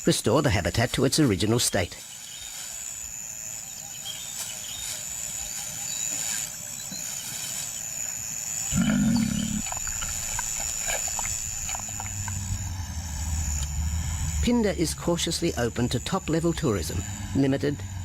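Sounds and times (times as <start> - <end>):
lion growling: 8.7 - 14.6.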